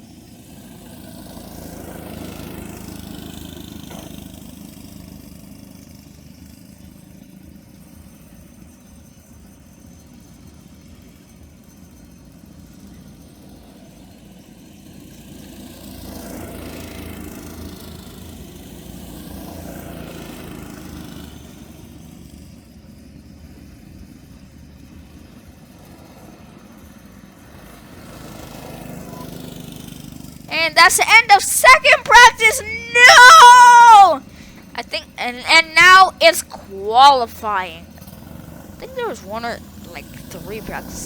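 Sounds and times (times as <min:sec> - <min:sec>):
go-kart engines: 0:25.6 - 0:30.6.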